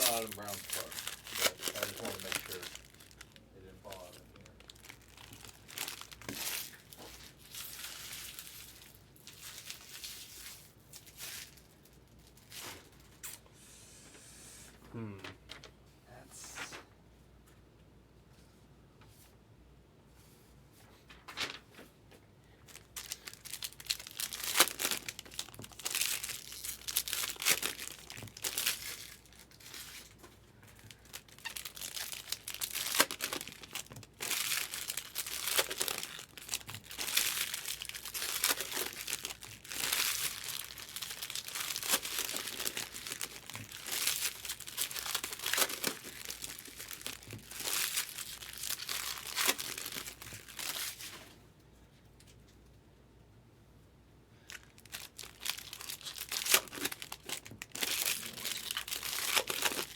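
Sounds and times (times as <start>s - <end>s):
card pack wrappers crinkling: 0.0s - 13.3s, 21.1s - 21.6s, 22.6s - 51.2s, 54.4s - 59.9s.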